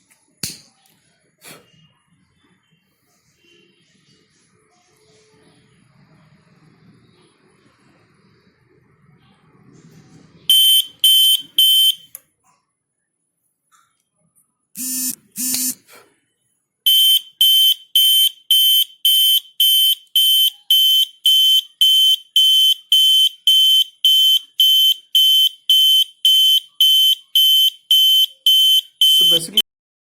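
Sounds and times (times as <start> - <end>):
high-pitched alarm beeps: 10.5 - 12.1, 14.8 - 15.8, 16.9 - 29.6
repeated alarm beeping: 10.5 - 12.1, 14.8 - 15.8, 16.9 - 29.7
lower-pitched alarm tones: 14.8 - 15.8.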